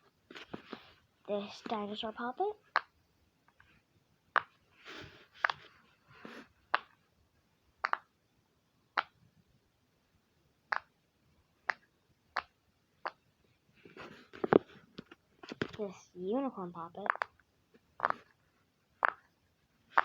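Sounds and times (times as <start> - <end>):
soft rustle: 0.2 - 2.3, 13.5 - 16.0
toy puppet clicking: 2.7 - 2.9, 4.3 - 4.5, 6.7 - 7.0, 7.8 - 8.1, 8.9 - 9.2, 10.7 - 10.9, 11.6 - 13.2, 17.0 - 18.2, 19.0 - 19.3.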